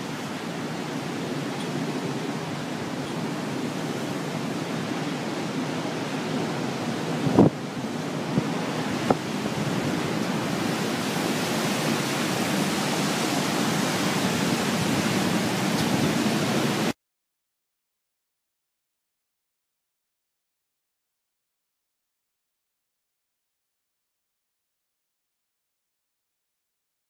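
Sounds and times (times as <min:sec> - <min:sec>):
wind buffeting microphone: 0:00.0 - 0:16.9
hurricane wind and water rushing: 0:00.0 - 0:17.0.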